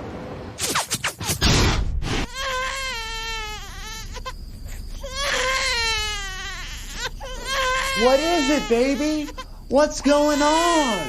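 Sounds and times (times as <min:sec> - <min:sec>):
baby crying: 0:02.3 - 0:04.4, 0:05.0 - 0:11.0.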